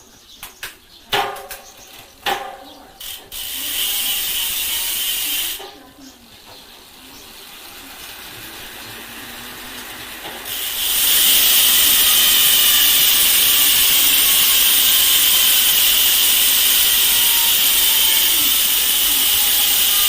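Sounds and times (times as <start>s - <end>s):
bicycle hub freewheeling buzz: 2.9s - 5.6s, 7.2s - 20.0s.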